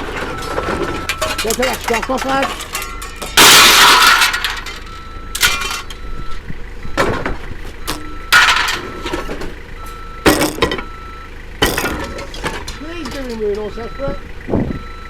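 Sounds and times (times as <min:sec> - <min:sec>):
metallic clanks: 0:00.0 - 0:06.0, 0:07.0 - 0:09.6, 0:10.2 - 0:11.0, 0:11.6 - 0:13.7
scrap metal crashing clatter: 0:00.0 - 0:06.0, 0:06.9 - 0:10.9, 0:11.6 - 0:13.7.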